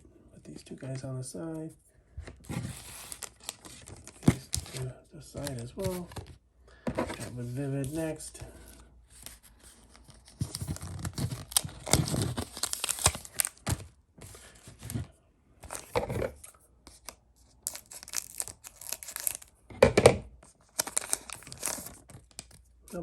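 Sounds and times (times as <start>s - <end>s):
foil wrapper tearing and crinkling: 2.9s - 4.8s, 10.1s - 13.9s, 17.0s - 19.5s, 20.6s - 22.6s.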